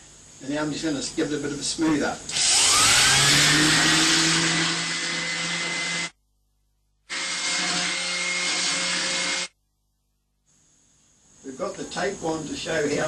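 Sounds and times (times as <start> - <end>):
power tool whining: 2.3 - 6.2, 7.1 - 9.5.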